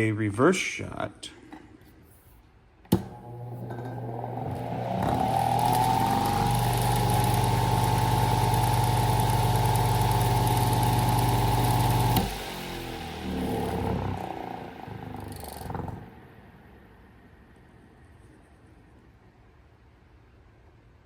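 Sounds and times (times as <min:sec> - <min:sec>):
electric fan motor whirring: 0:02.9 - 0:16.7.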